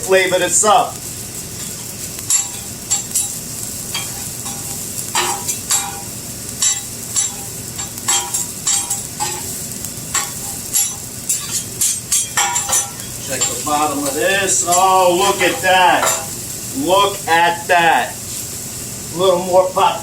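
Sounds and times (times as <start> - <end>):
food sizzling on griddle: 0.0 - 20.0
metal spatula scraping steel: 1.6 - 16.4.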